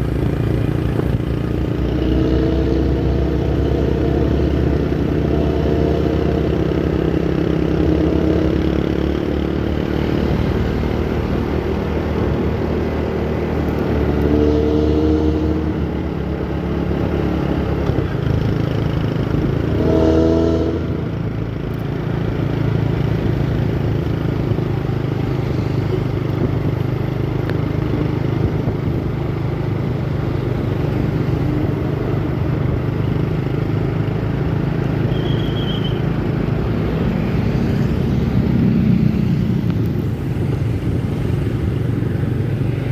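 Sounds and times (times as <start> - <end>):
bus engine growling exhaust: 0.0 - 42.9.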